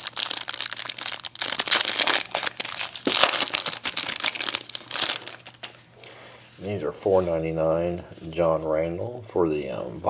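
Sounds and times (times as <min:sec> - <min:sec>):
card pack wrapper crinkling: 0:00.0 - 0:05.8.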